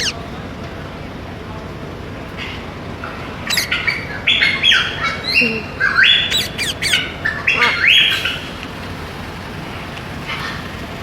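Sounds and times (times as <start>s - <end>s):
parrots squawking: 0.0s - 0.2s, 3.0s - 11.0s.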